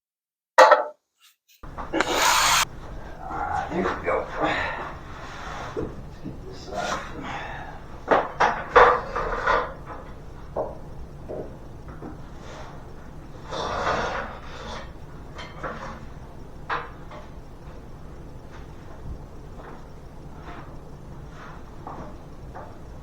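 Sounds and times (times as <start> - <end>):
scraping slide on floor: 2.0 - 2.6.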